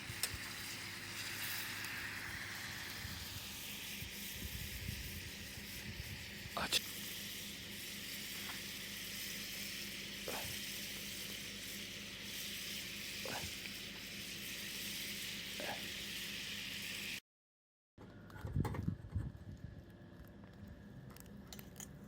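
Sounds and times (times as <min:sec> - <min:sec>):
food sizzling over campfire: 0:00.0 - 0:17.2.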